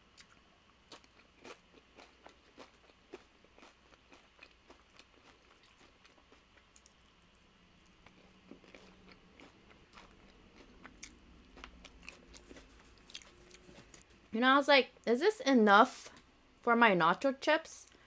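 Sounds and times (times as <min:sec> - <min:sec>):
chewing nacho chips: 0:00.0 - 0:14.1.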